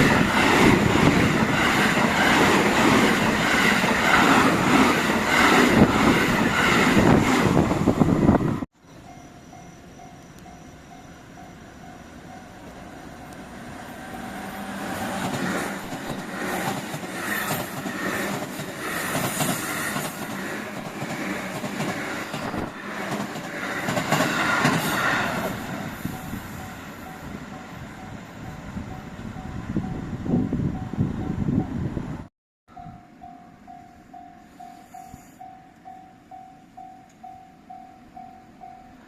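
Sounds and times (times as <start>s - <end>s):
train wheels clattering over rails: 14.6s - 26.8s.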